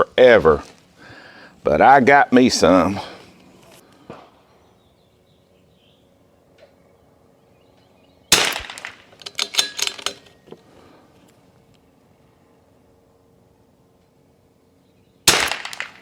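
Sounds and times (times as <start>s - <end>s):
rifle shot: 8.3s - 9.8s, 15.3s - 16.0s.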